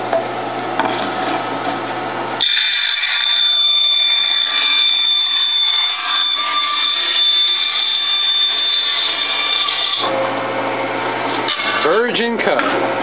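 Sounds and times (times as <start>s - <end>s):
bandsaw blade whining through plywood: 2.4s - 10.3s, 11.4s - 12.1s
bandsaw running: 2.4s - 12.3s.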